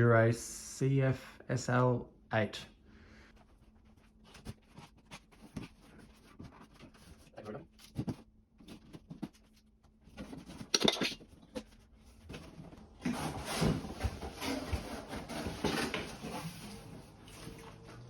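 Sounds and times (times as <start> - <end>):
packaging rustling and scraping: 3.6 - 17.6.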